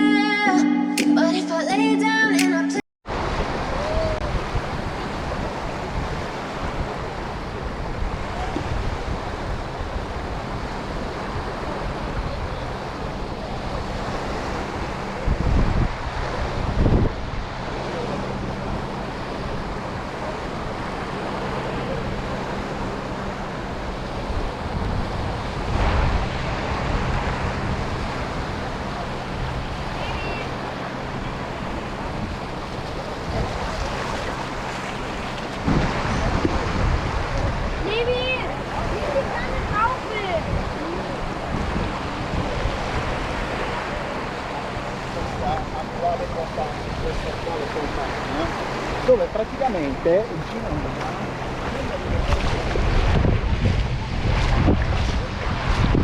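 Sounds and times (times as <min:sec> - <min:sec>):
waves washing onto beach: 0:03.1 - 0:56.0
wind buffeting microphone: 0:03.1 - 0:56.0
faint voices: 0:17.3 - 0:24.8, 0:27.9 - 0:53.0.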